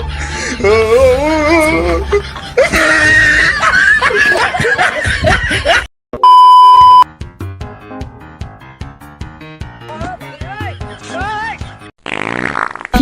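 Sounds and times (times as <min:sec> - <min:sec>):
shrieking laughing voices: 0:01.4 - 0:05.9
high censor beep: 0:06.2 - 0:07.0.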